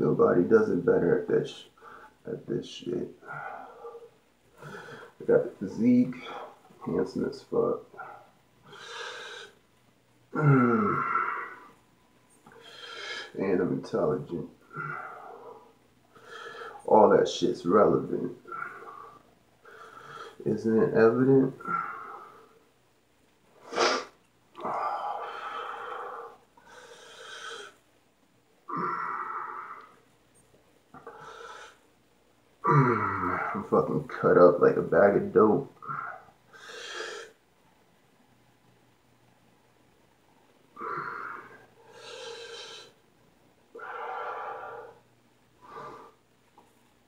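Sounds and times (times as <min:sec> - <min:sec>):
man breathing hard: 0:03.2 - 0:05.2, 0:24.6 - 0:27.8, 0:40.8 - 0:43.0, 0:43.7 - 0:46.3.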